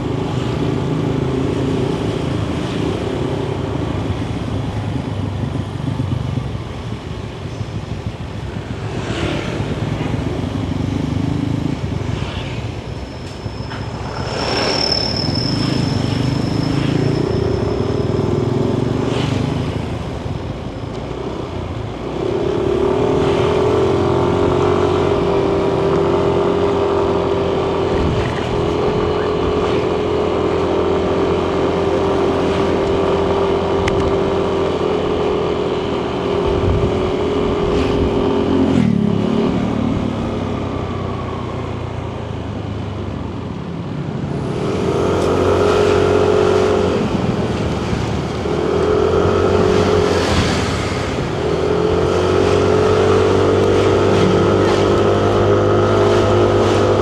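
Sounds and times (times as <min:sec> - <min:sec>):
road and wind noise: 0:00.0 - 0:57.0
scooter engine running: 0:41.8 - 0:57.0.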